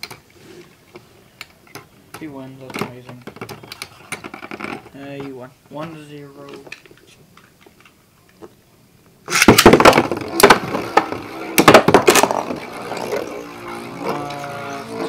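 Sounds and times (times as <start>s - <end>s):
spinning tops clattering and clashing: 9.3s - 15.0s.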